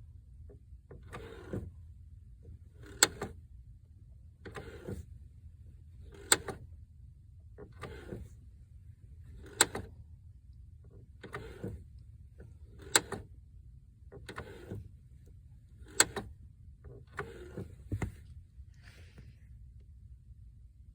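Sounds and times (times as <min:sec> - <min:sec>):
clutch pedal clicking: 0:02.8 - 0:03.4, 0:06.1 - 0:06.6, 0:09.4 - 0:09.9, 0:12.7 - 0:13.3, 0:15.8 - 0:18.3
clutch pedal rubbing swish: 0:04.5 - 0:05.1, 0:07.6 - 0:08.4, 0:11.2 - 0:11.9, 0:14.2 - 0:15.0, 0:15.8 - 0:19.1.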